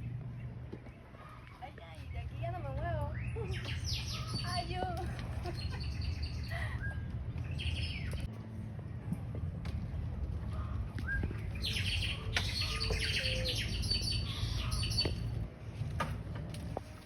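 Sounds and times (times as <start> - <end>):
small birds chirping: 0.0 - 8.3, 10.6 - 15.4
steady low rumble: 0.0 - 17.0.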